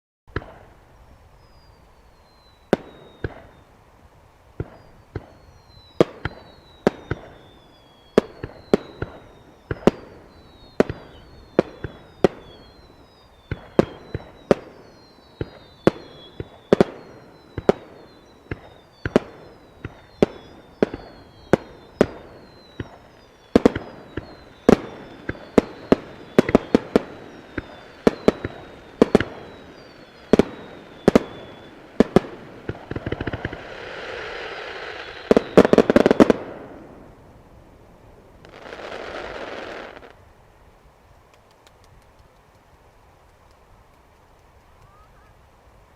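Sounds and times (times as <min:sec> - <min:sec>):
falling firework whistle: 0:00.3 - 0:03.7, 0:04.6 - 0:37.1, 0:38.4 - 0:40.2
fireworks banging: 0:02.7 - 0:03.6, 0:04.6 - 0:37.1.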